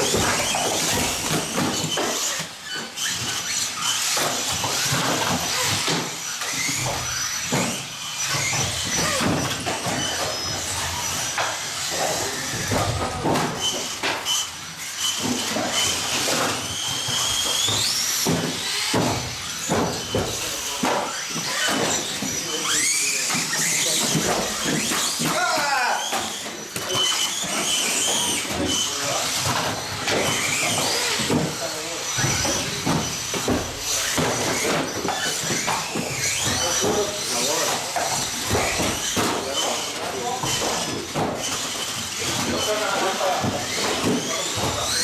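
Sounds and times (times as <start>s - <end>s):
electric motors whining: 0.0s - 45.0s
clicks and knocks from cars: 15.0s - 22.4s.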